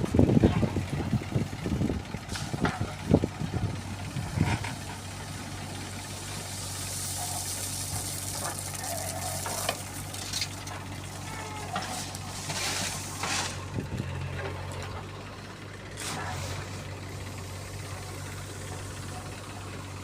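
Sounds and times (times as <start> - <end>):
diesel engine running: 0.0 - 20.0
stone chips pouring into trolley: 6.4 - 10.6.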